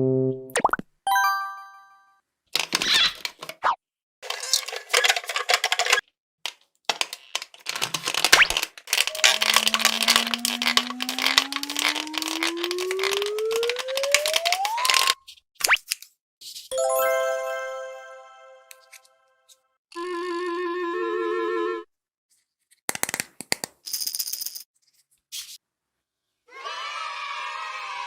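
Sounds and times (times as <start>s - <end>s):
frozen stress ball crackling: 7.9s - 15.2s
rising slide-whistle-like tone: 9.1s - 15.2s.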